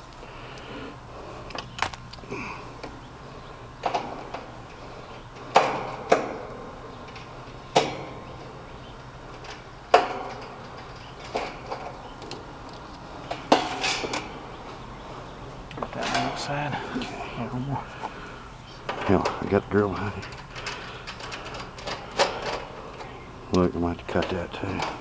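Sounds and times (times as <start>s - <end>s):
metal tools clanking: 13.2s - 14.4s, 15.8s - 17.4s.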